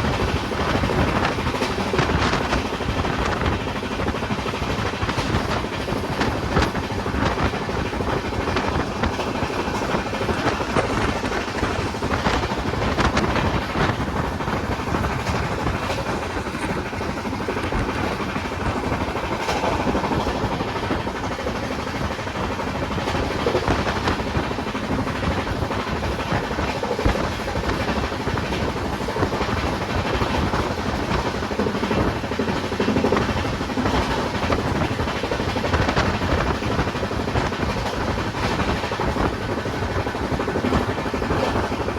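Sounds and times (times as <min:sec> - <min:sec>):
train rumbling on tracks: 0:00.0 - 0:41.9
wheels clicking over rail joints: 0:00.0 - 0:41.9.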